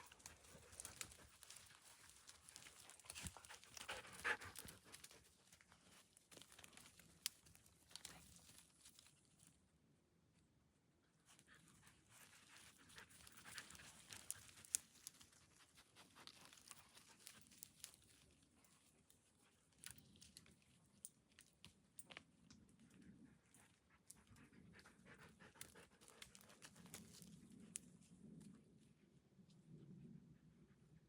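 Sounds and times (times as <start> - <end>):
dog panting: 0.0 - 5.2, 23.5 - 26.9
dry leaves and twigs crackling: 0.0 - 9.6, 11.7 - 22.2, 25.6 - 27.9.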